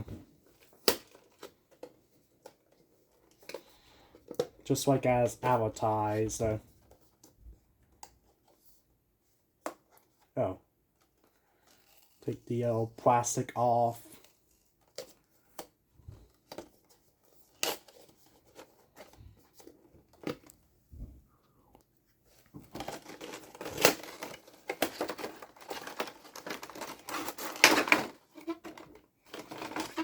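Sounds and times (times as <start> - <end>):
plastic wrapping crinkling and tearing: 22.7 - 30.0.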